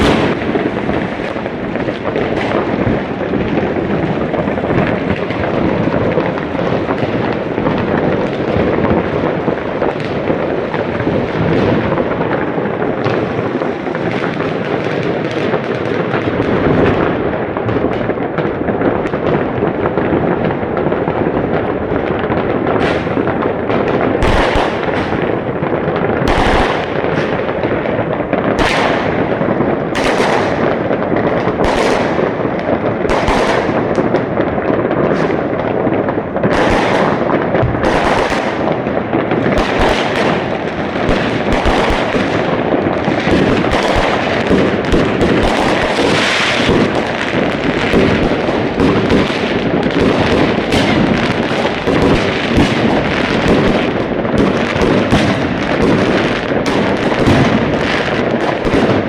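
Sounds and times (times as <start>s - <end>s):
firecrackers crackling: 0.0s - 59.0s
fireworks bangs: 0.0s - 59.0s.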